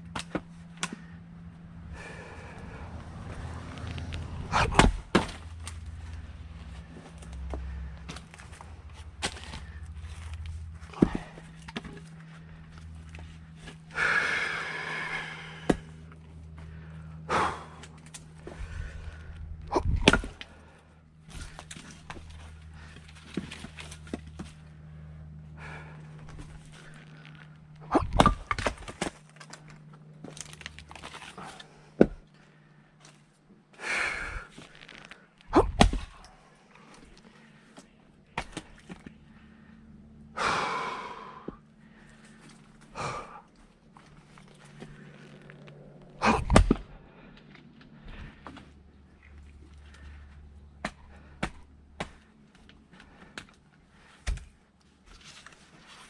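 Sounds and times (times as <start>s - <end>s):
axe striking firewood: 0.0s - 1.1s, 4.5s - 5.8s, 9.2s - 12.0s, 15.6s - 16.0s, 19.7s - 20.5s, 27.8s - 29.5s, 32.0s - 32.2s, 35.5s - 36.3s, 38.4s - 39.1s, 46.2s - 47.0s, 50.8s - 52.3s, 54.2s - 54.6s
person breathing hard: 0.9s - 3.7s, 5.8s - 21.6s, 24.6s - 28.2s, 33.8s - 38.0s, 39.2s - 45.2s, 46.2s - 48.9s, 49.6s - 54.2s
log cracking apart: 26.2s - 32.2s, 44.0s - 46.9s.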